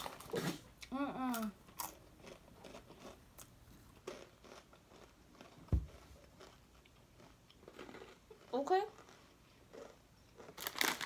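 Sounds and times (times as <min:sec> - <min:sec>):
chips crunching: 0:01.3 - 0:11.0.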